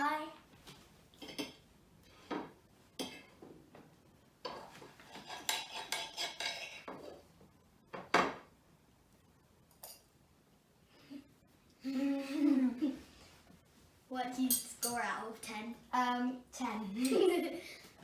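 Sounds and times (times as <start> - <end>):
cutlery clinking on a plate: 4.5 - 7.2.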